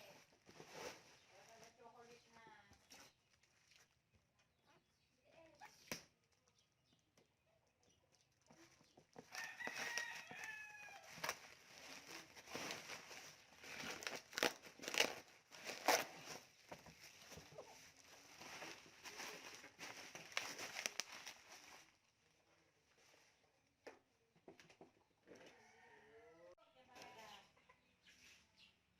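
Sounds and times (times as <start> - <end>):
packaging rustling and knocking: 9.2 - 21.8.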